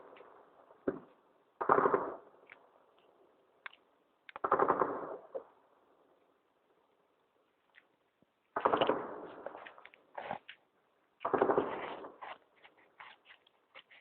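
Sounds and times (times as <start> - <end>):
automatic gunfire echoing: 1.6 - 2.3, 4.4 - 5.3, 8.6 - 9.5.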